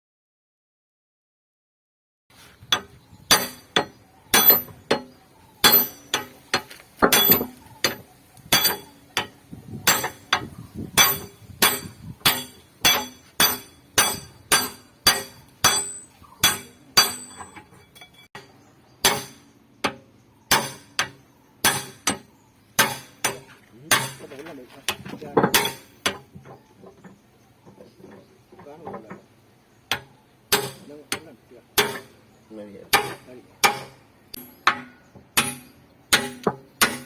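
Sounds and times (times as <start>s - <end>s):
hammer blows on steel: 2.6s - 18.1s.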